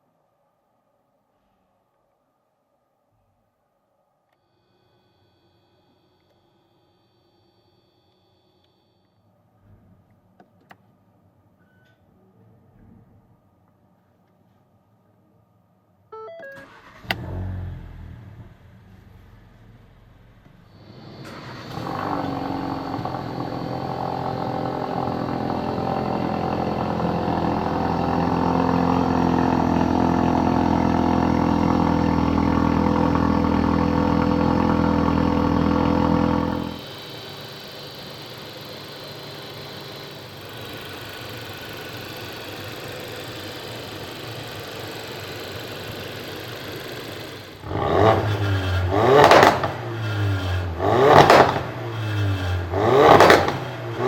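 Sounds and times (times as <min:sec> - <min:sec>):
car engine running: 0:16.2 - 0:54.0
car engine idling: 0:16.5 - 0:54.0
sharp engine revs: 0:16.6 - 0:54.0.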